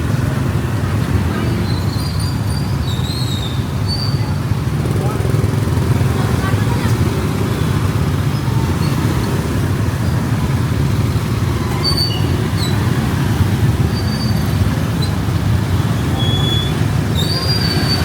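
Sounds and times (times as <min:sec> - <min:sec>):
road traffic rumble: 0:00.0 - 0:18.0
high squeaks: 0:11.7 - 0:12.9, 0:13.8 - 0:15.2, 0:16.0 - 0:18.0.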